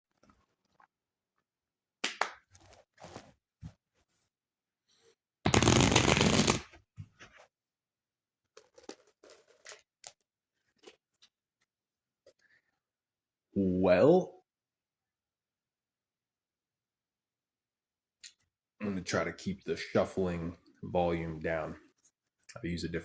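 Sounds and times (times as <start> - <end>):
card shuffle riffle: 5.5 - 6.6
cards flicking and tapping: 5.5 - 6.7.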